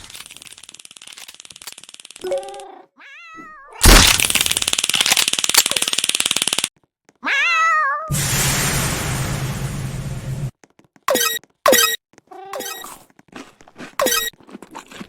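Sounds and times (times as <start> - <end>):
cat meowing: 2.2 - 3.8, 7.2 - 8.1, 12.3 - 12.9.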